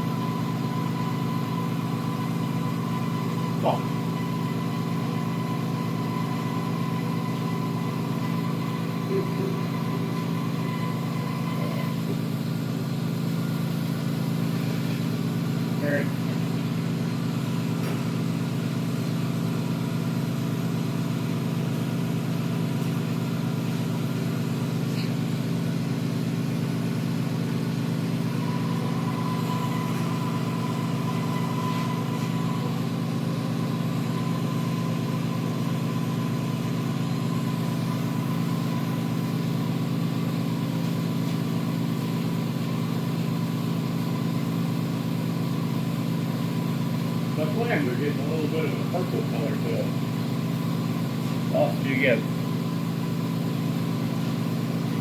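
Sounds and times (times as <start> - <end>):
low mechanical drone: 0.0 - 19.0, 21.6 - 43.1.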